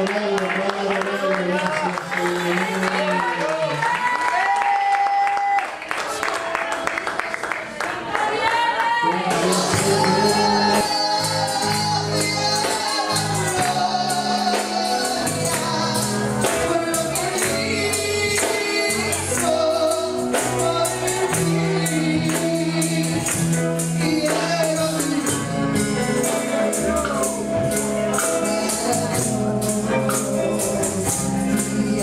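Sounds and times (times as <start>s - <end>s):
congregation singing: 6.2s - 32.0s
held bass notes: 9.2s - 32.0s
tambourine beat: 9.4s - 32.0s.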